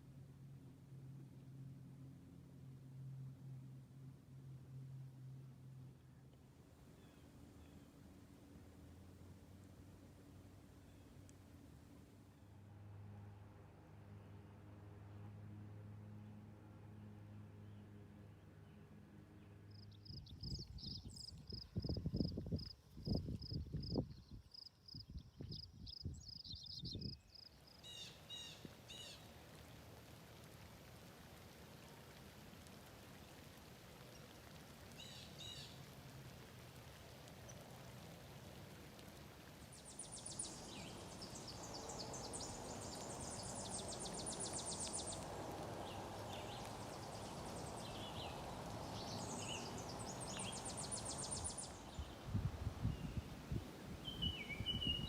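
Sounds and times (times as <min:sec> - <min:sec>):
steady background hiss: 0:27.2 - 0:55.0.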